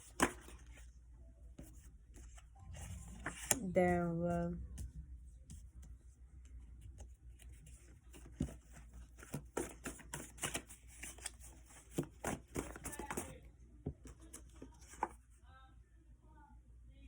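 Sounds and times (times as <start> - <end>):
cards being shuffled: 0.0 - 0.8, 1.6 - 3.6, 6.9 - 13.3.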